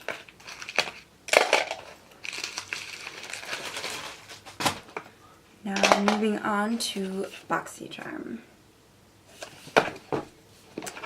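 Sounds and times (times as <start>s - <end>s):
packaging crinkling: 0.0s - 5.1s.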